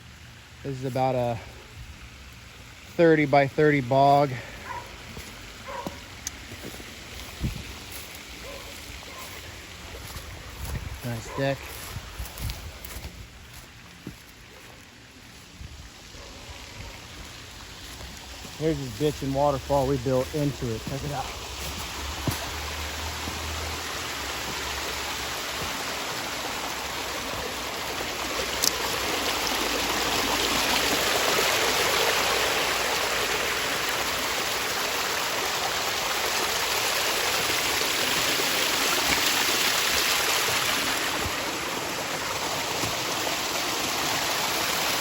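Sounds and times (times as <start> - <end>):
water rushing over waterfall: 20.6 - 45.0.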